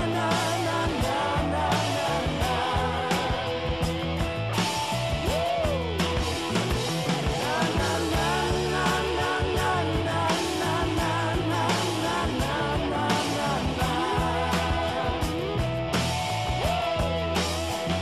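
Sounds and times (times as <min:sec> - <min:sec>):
rock music with bass and drums: 0:00.0 - 0:18.0.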